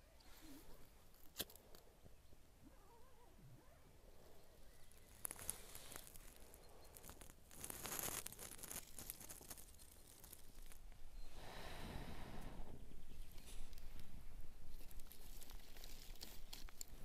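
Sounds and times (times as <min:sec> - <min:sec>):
rustling and crinkling handling noise: 0:04.7 - 0:10.9, 0:13.3 - 0:17.0.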